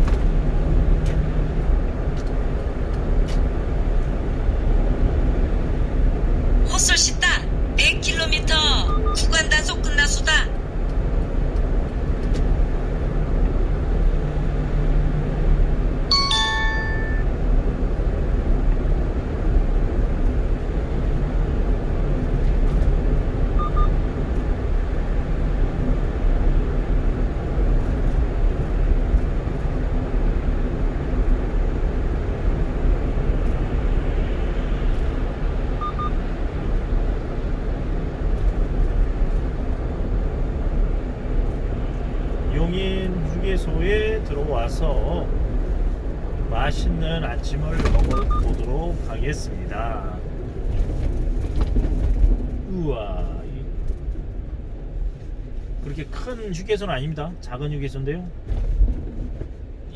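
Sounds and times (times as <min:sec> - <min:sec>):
truck road and engine noise: 0:00.0 - 0:57.4, 0:58.2 - 0:59.9
faint double beep: 0:08.7 - 0:09.6, 0:16.1 - 0:17.3, 0:23.6 - 0:23.9, 0:35.8 - 0:36.2, 0:48.0 - 0:48.6
electronic chime: 0:16.1 - 0:17.3.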